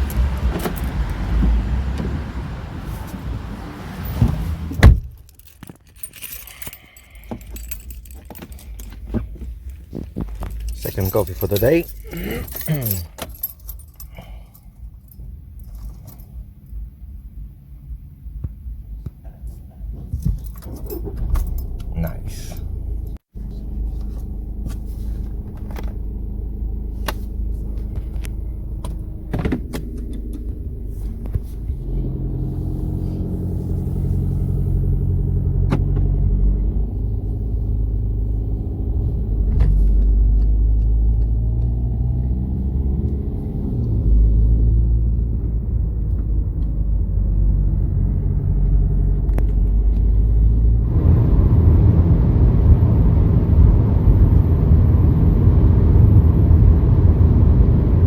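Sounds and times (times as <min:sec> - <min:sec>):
car engine changing gear: 0:00.0 - 0:14.4, 0:19.9 - 0:58.0
road rumble: 0:00.0 - 0:58.0.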